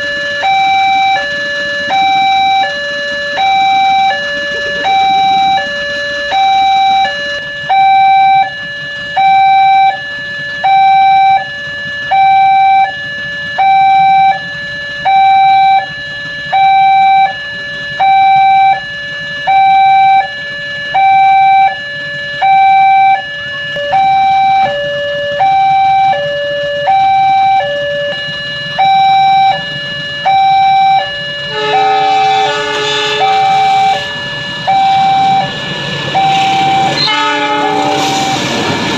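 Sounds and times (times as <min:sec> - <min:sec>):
two-tone level crossing alarm: 0:00.0 - 0:38.9
train horn: 0:15.8 - 0:38.6.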